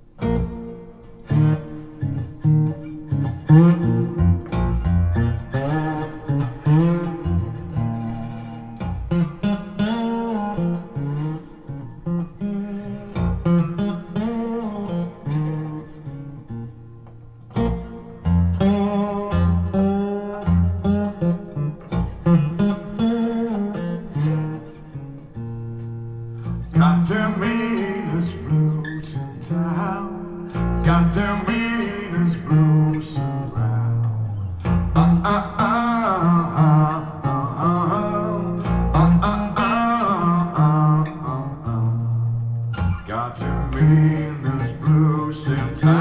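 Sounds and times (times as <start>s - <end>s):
acoustic blues guitar: 0.0s - 46.0s.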